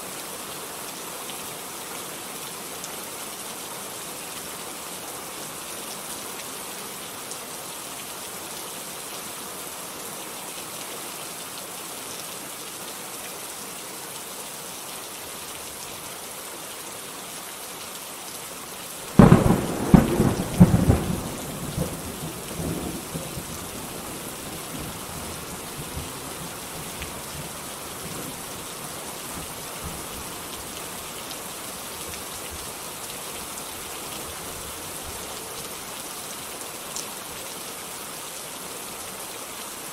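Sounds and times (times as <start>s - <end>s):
heavy rain hissing: 18.6s - 37.8s
thunderclap rumbling: 19.2s - 24.0s.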